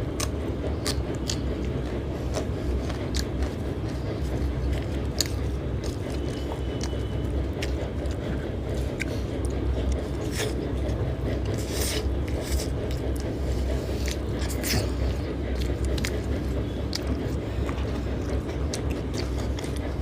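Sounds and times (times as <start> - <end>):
crunchy chewing: 0.0 - 20.0
low background hum: 0.0 - 20.0.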